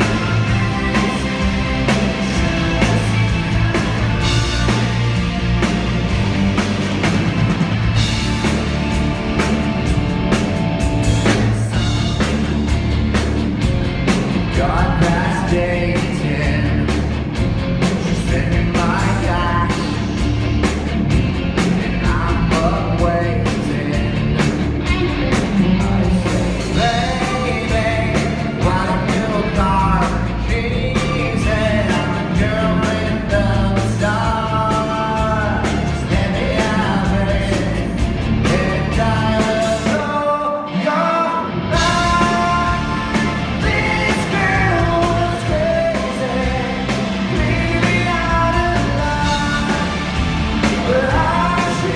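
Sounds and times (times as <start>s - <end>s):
lead singer vocals: 0.0s - 4.8s, 14.5s - 17.0s, 18.1s - 20.1s, 25.6s - 51.9s
rock band playing: 0.0s - 51.9s.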